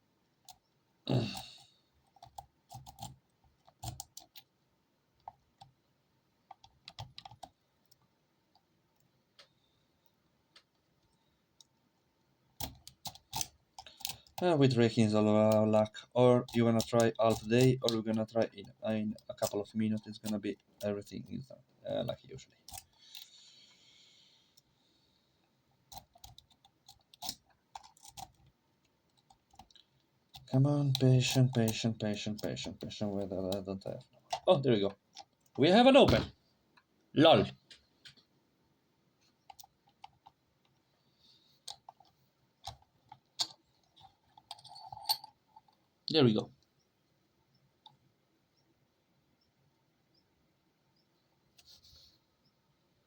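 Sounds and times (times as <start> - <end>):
lock pick scraping: 12.6 - 14.4, 25.9 - 28.4, 41.6 - 45.8.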